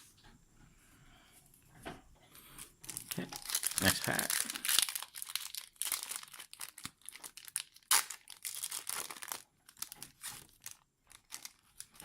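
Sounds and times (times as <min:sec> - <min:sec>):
foil wrapper crinkling: 0:02.8 - 0:12.0.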